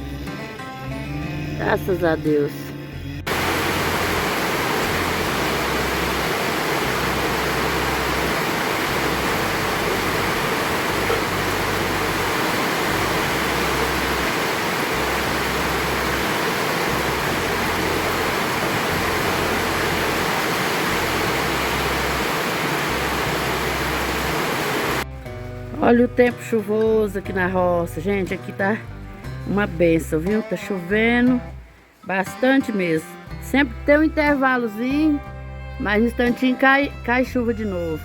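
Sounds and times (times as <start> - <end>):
steady rain falling: 3.3 - 25.1.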